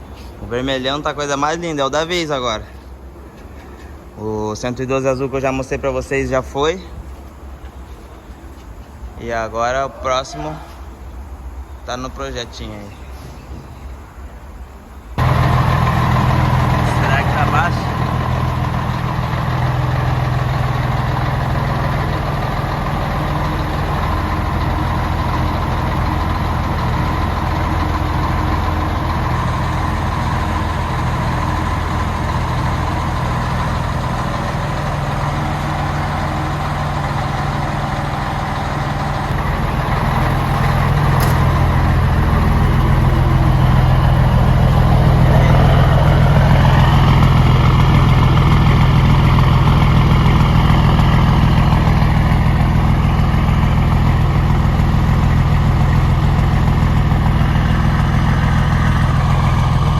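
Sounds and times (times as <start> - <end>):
diesel truck engine idling: 13.8 - 59.9.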